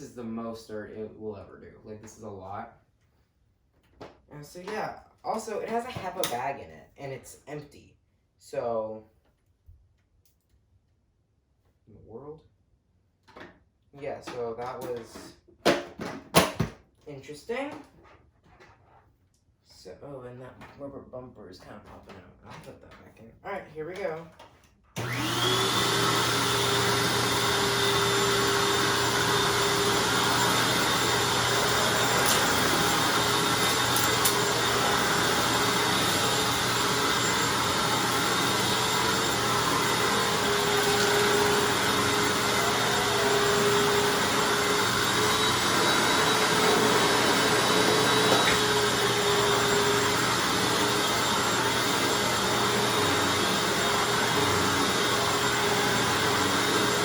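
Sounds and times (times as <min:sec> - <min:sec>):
vacuum cleaner motor whine: 0:25.0 - 0:57.0.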